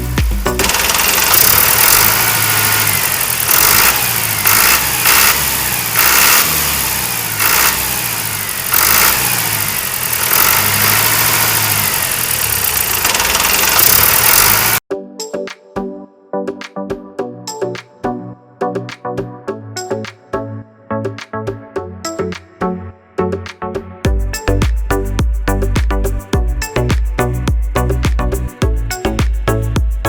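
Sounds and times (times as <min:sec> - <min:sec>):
small engine running with surges: 0:00.6 - 0:14.8.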